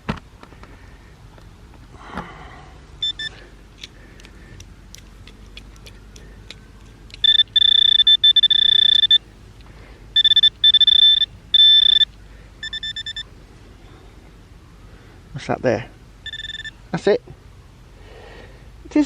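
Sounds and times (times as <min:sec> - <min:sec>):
metal detector pinpointer alarm tone: 0:03.0 - 0:03.4, 0:07.2 - 0:09.2, 0:10.2 - 0:13.3, 0:16.2 - 0:16.8.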